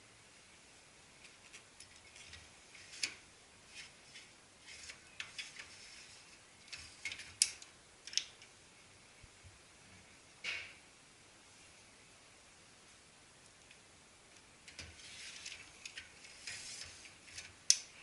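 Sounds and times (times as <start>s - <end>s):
plastic clicks and scrapes: 1.2s - 8.5s, 14.7s - 18.0s.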